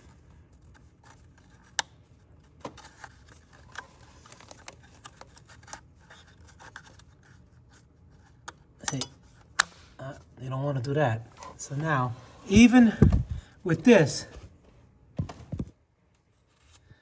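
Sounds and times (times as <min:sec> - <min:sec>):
plastic clicks and scrapes: 0:00.0 - 0:09.6.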